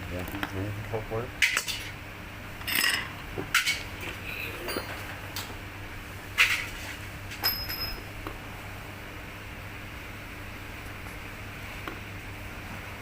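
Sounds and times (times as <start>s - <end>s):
steady low hum: 0.0s - 13.0s
faint metallic ring: 7.4s - 8.1s.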